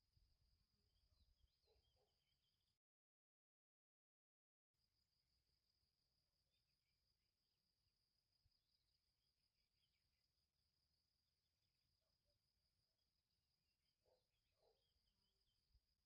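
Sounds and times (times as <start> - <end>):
faint high insect trill: 4.6 - 16.0.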